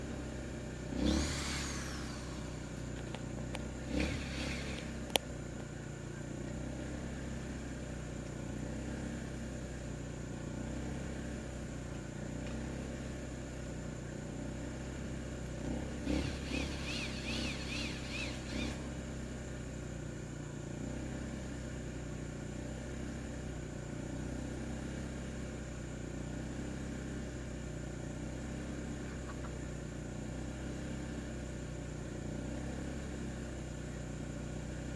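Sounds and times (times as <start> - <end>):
steady low hum: 0.0 - 32.5
chickens calling: 1.0 - 5.2, 16.1 - 18.9, 28.8 - 29.6
quick repeated chirps: 16.1 - 18.9.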